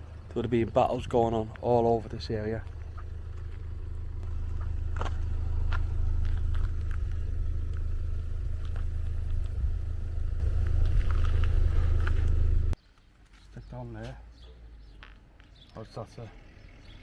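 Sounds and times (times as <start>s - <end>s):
car engine and road drone: 0.0s - 12.8s.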